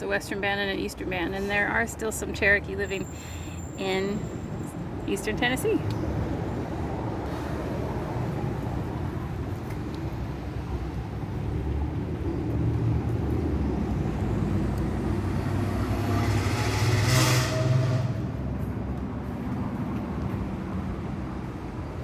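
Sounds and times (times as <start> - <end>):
city traffic rumble: 0.0 - 22.0
vehicle passing close by: 5.9 - 22.0.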